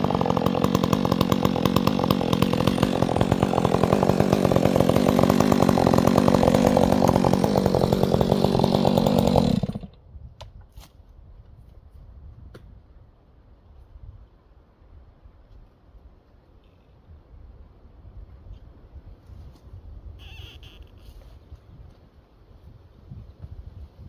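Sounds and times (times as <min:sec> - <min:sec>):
chainsaw engine running: 0:00.0 - 0:10.0.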